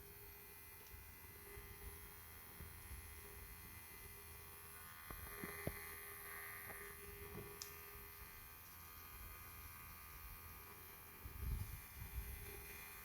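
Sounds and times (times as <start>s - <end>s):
small motor humming: 0.0s - 13.0s.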